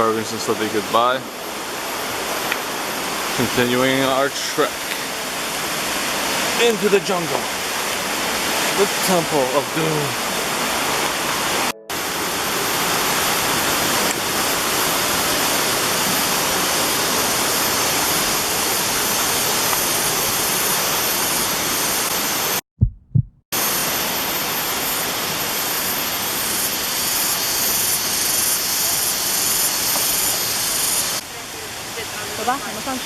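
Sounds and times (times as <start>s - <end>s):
water rushing: 0.2s - 22.0s
low thumps: 22.8s - 23.4s.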